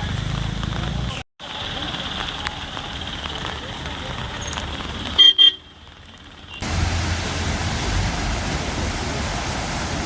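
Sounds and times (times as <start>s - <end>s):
rushing noise with low rumble: 6.0s - 10.0s.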